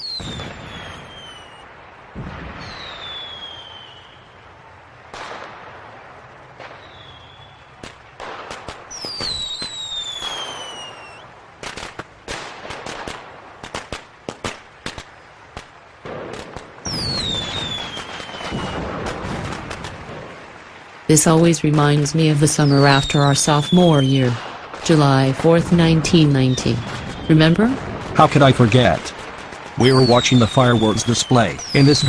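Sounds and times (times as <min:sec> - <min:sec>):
fireworks booming: 0:00.0 - 0:04.3, 0:05.1 - 0:32.0
fireworks whistling: 0:00.0 - 0:04.4, 0:06.7 - 0:07.9, 0:08.5 - 0:12.0, 0:16.3 - 0:19.9, 0:21.8 - 0:32.0
fireworks cracks and pops: 0:06.6 - 0:20.5, 0:26.8 - 0:32.0.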